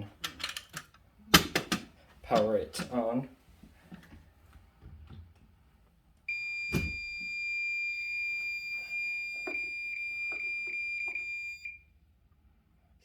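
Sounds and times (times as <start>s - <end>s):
fire alarm high-pitched tone: 6.3s - 11.9s.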